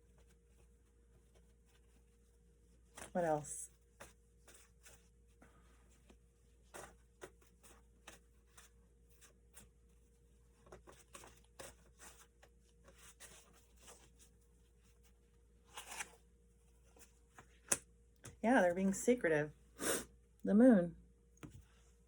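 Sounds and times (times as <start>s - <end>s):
cards clicking and tapping: 17.4s - 18.4s.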